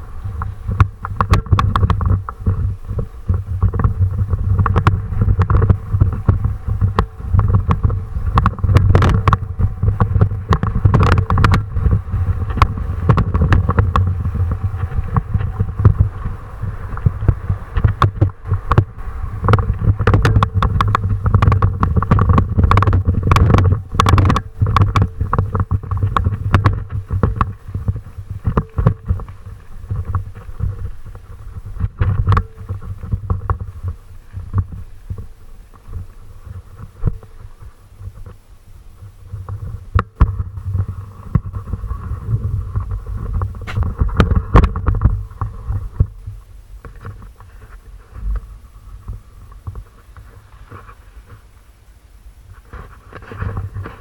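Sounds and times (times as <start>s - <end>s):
wind buffeting microphone: 0.0s - 54.0s
sharp knocks and rattles: 0.4s - 38.4s.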